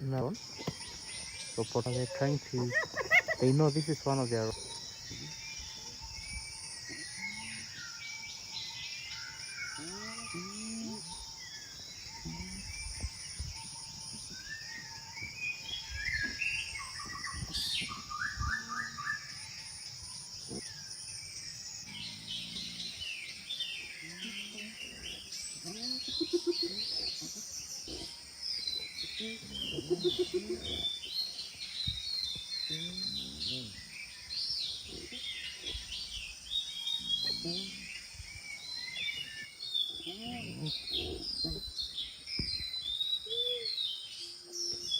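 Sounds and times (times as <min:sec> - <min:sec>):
birds chirping: 0:00.0 - 0:44.9
insect hum: 0:00.0 - 0:44.9
low animal calls: 0:36.9 - 0:38.1, 0:39.1 - 0:42.0.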